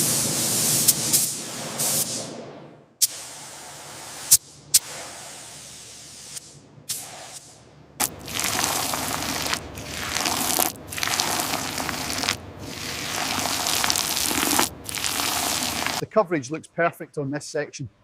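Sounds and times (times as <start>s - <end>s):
paint spray gun hissing: 11.1s - 16.0s.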